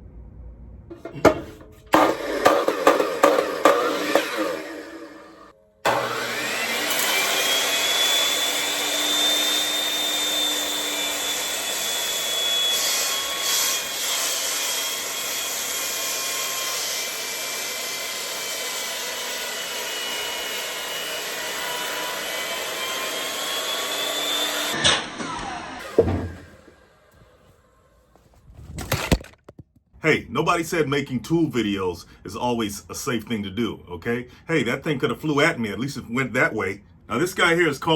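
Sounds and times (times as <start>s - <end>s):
circular saw motor whine: 1.9s - 13.3s.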